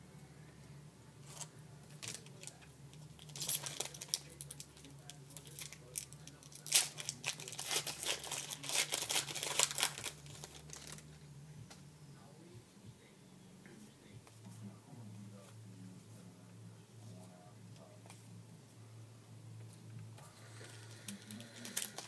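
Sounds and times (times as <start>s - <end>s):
steady low hum: 0.0s - 22.0s
wrapper tearing and crinkling: 1.2s - 2.6s, 3.2s - 11.0s, 21.0s - 22.0s.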